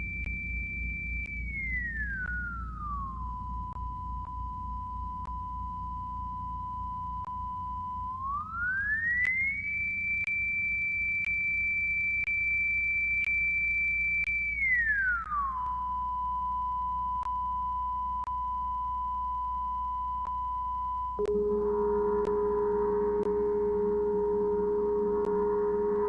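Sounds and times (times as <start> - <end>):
high test tone gliding down: 21.2 - 26.0.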